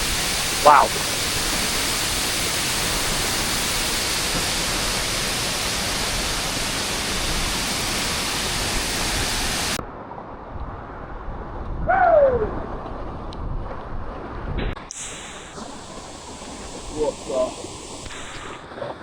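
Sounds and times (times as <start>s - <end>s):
waterfall roaring: 0.0s - 9.8s, 14.9s - 18.7s.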